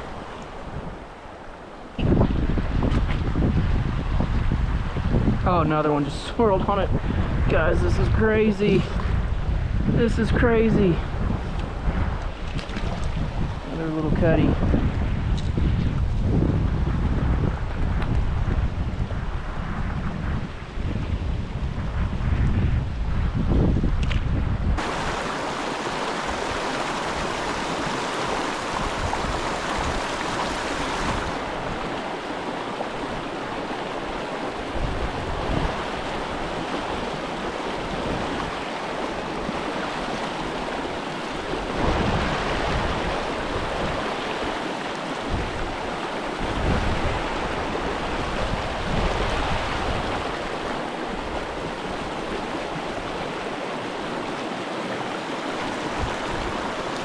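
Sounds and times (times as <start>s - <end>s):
wind buffeting microphone: 0.0s - 57.0s
creek water running: 24.8s - 57.0s.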